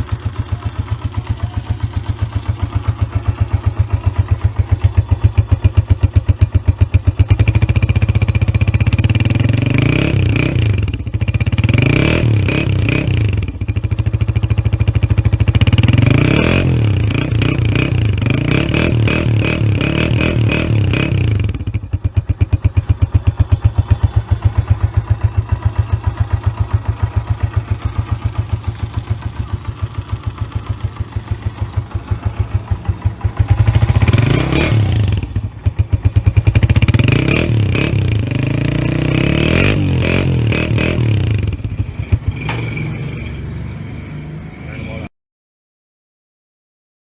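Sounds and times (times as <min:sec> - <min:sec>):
motorcycle engine revving and idling: 0:00.0 - 0:45.1.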